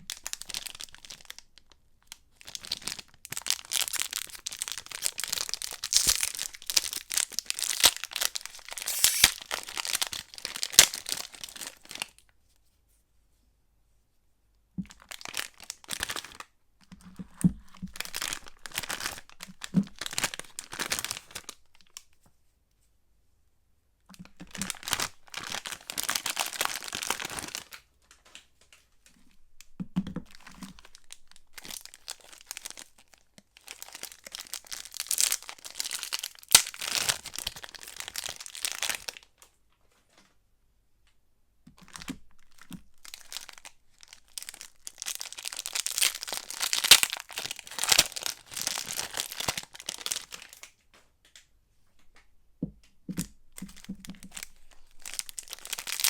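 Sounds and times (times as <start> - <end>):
wrappers tearing and crinkling: 0.2 - 1.4, 2.5 - 12.1, 17.8 - 21.5, 24.5 - 27.8, 30.4 - 39.2, 41.9 - 50.7, 53.7 - 56.0.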